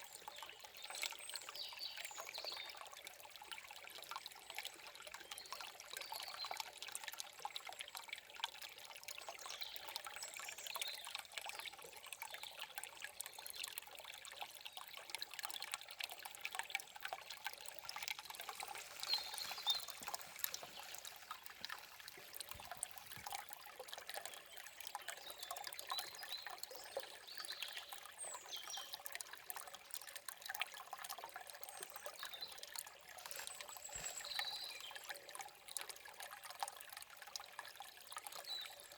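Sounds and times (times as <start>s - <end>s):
stream babbling over stones: 0.0s - 38.9s.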